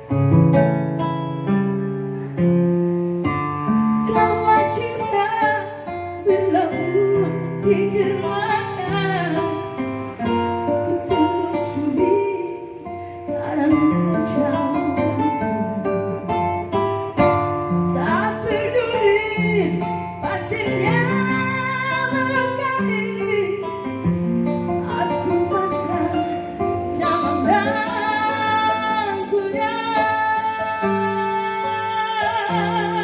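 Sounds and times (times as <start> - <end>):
acoustic guitar: 0.0 - 33.0
person singing: 10.7 - 16.4, 24.8 - 33.0.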